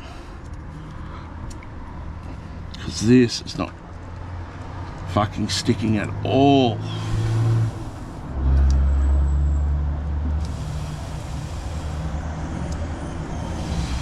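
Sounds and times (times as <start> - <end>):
low mechanical rumble: 6.2 - 8.9, 10.0 - 14.0.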